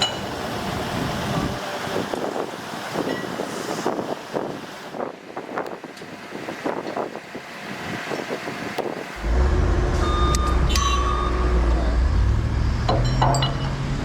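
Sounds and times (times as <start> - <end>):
heavy machinery engine drone: 0.0 - 4.4, 7.4 - 14.0.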